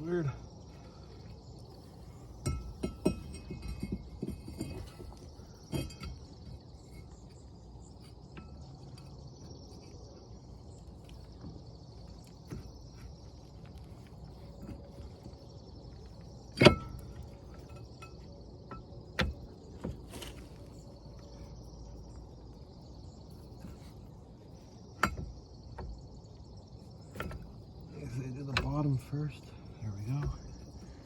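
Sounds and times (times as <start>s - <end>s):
insects chirping: 0.0s - 31.0s
metal tools clinking and knocking: 2.4s - 7.2s.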